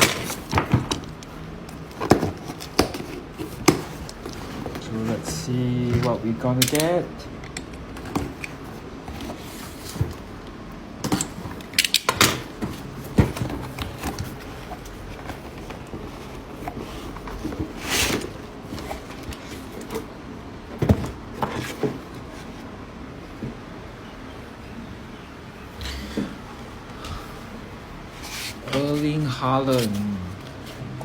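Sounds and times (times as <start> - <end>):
cardboard scraping rustle: 1.8 - 6.3, 8.2 - 10.3, 12.4 - 20.2, 20.8 - 22.7, 28.1 - 31.0.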